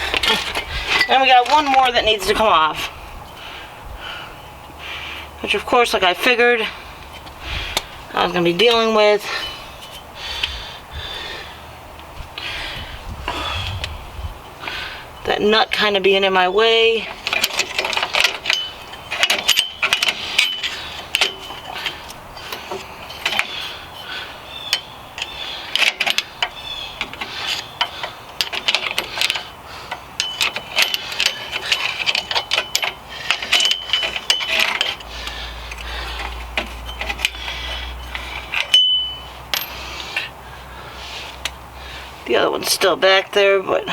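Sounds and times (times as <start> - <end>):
low rumble: 9.5 - 15.3
hand ratchet clicking: 17.1 - 23.7, 24.7 - 40.3.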